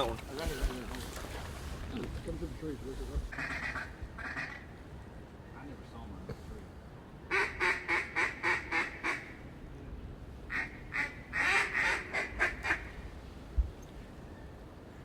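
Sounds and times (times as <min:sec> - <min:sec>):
duck quacking: 0:03.3 - 0:04.6, 0:07.3 - 0:09.3, 0:10.5 - 0:12.8.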